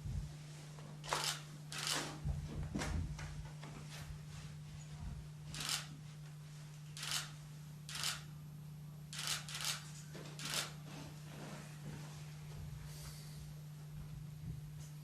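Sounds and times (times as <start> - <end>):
low electrical hum: 0.0 - 15.0
scissors snipping hair: 7.0 - 8.2, 9.2 - 9.8.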